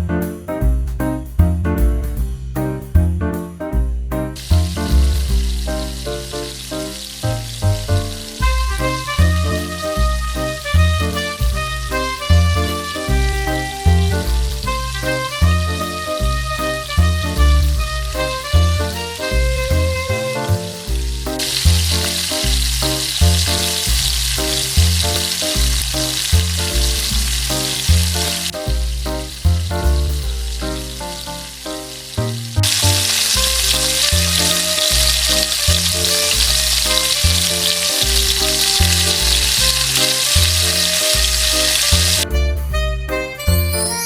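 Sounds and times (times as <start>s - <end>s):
music with bass beat: 0.0s - 44.0s
hot oil sizzling: 4.4s - 42.5s.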